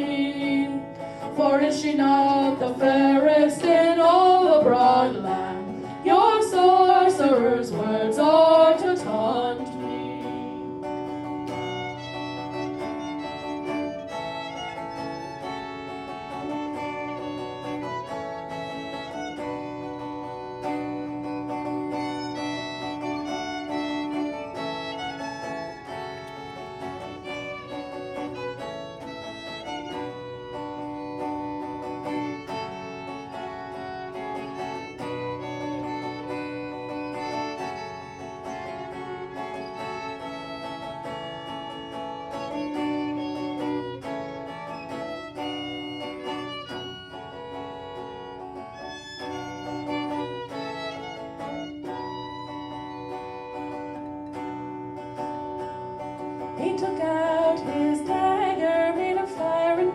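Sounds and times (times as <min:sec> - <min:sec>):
fiddle slow melody: 0:00.0 - 0:59.9
plucked acoustic guitar: 0:00.0 - 0:59.9.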